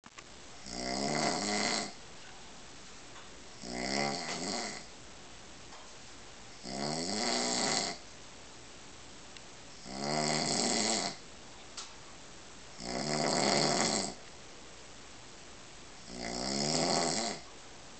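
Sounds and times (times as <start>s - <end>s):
man snoring: 0.6s - 2.0s, 3.6s - 4.9s, 6.6s - 8.0s, 9.8s - 11.2s, 12.8s - 14.2s, 16.0s - 17.5s.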